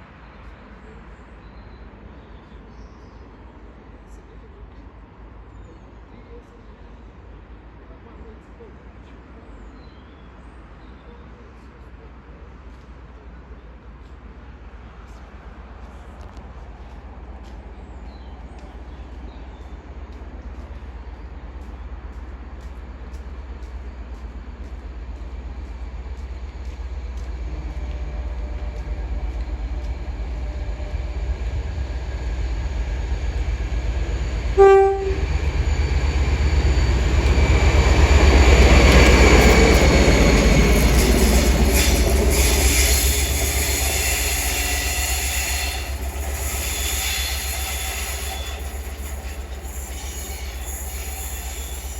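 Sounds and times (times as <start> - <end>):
diesel locomotive engine: 0.0 - 51.9
train wheels on rails: 13.9 - 51.9
train horn blast: 34.5 - 35.8, 40.9 - 51.9.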